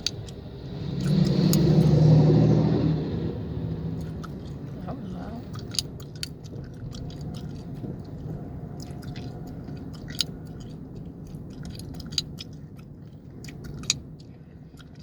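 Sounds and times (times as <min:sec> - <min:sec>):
gum chewing: 0:04.0 - 0:15.0.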